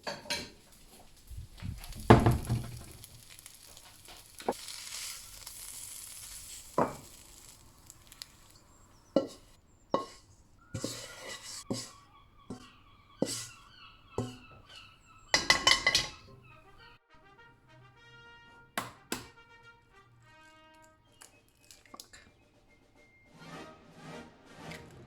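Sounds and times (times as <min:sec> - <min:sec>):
egg sizzling in a frying pan: 0:00.4 - 0:10.2
utensil knocking against pan: 0:14.2 - 0:14.4, 0:15.4 - 0:16.2.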